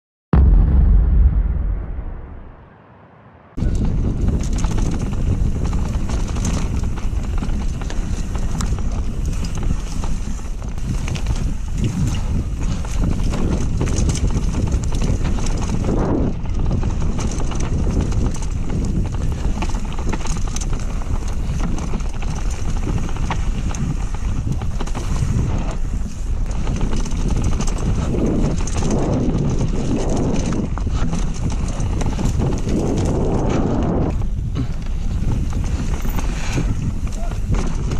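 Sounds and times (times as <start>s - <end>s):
bike clattering and rattling: 3.6s - 37.9s
wind on microphone: 3.6s - 37.9s.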